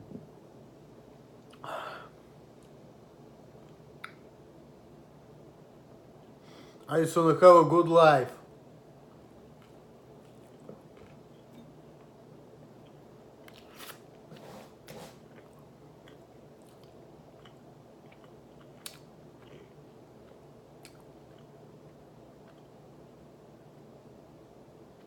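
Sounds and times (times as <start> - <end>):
man chewing food: 9.0 - 24.0.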